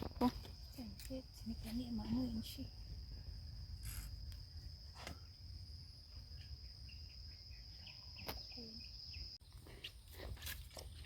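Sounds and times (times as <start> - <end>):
cricket trilling: 0.0 - 11.0.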